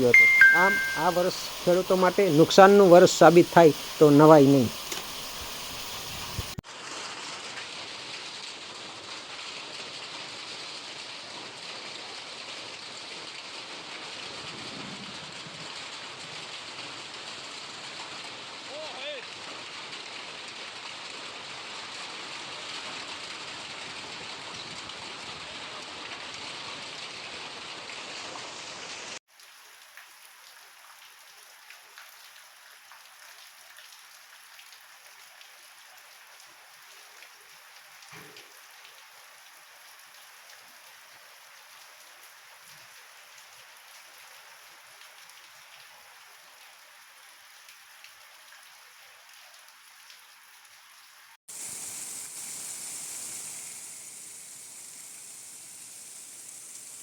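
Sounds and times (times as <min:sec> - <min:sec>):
rain falling: 0:00.0 - 0:06.6, 0:26.9 - 0:57.0.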